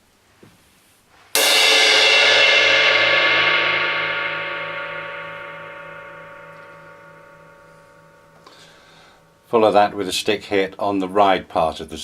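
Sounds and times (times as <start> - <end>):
cymbal ringing: 1.4 - 9.5
stick hitting cymbal: 1.4 - 9.5.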